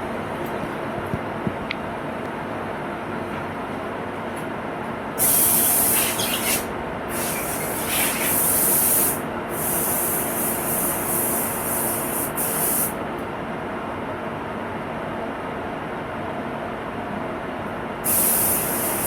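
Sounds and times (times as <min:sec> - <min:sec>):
steady background hum: 0:00.0 - 0:19.0
paint spray gun hissing: 0:05.2 - 0:12.9, 0:18.0 - 0:19.0.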